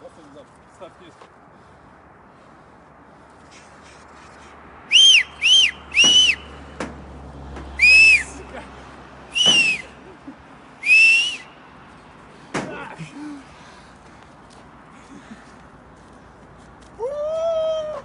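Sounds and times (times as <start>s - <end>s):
short loud whistles: 4.9s - 6.6s, 7.8s - 8.3s, 9.3s - 9.9s, 10.8s - 11.5s
sharp knocks: 6.0s - 7.7s, 9.4s - 9.8s.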